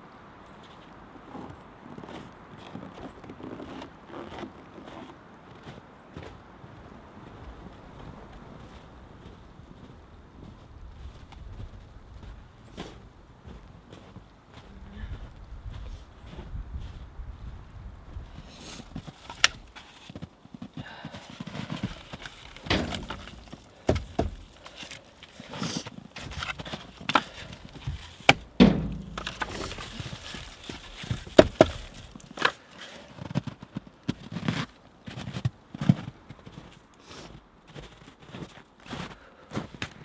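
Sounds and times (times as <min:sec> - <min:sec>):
sharp wood cracks: 0:19.0 - 0:20.1, 0:21.4 - 0:33.1
firewood knocking and thunking: 0:21.4 - 0:32.7.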